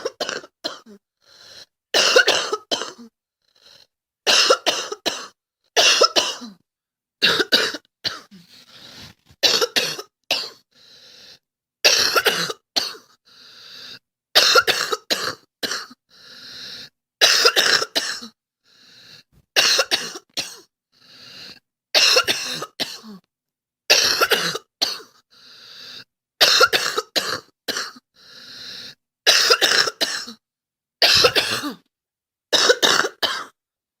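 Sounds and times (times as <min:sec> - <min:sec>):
girl coughing: 0:02.0 - 0:03.1, 0:04.3 - 0:06.6, 0:07.2 - 0:10.6, 0:11.9 - 0:13.0, 0:31.0 - 0:31.8, 0:32.6 - 0:33.6.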